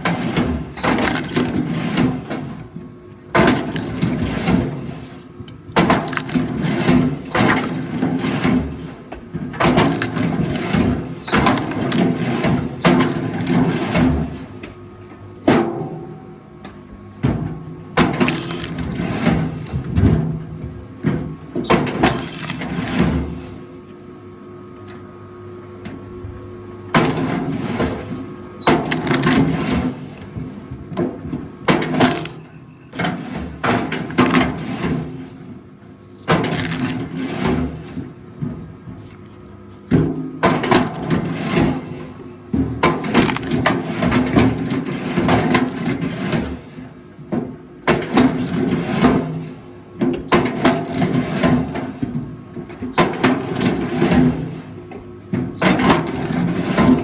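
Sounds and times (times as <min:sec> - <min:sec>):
log splitter humming: 0:26.8 - 0:35.2.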